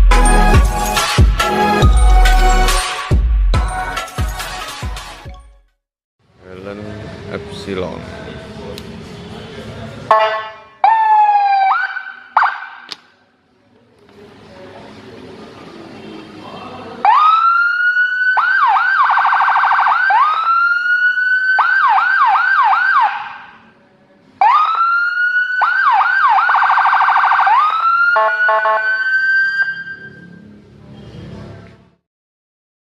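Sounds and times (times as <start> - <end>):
electronic siren wailing and yelping: 10.8 - 12.8, 17.1 - 23.4, 24.4 - 30.3.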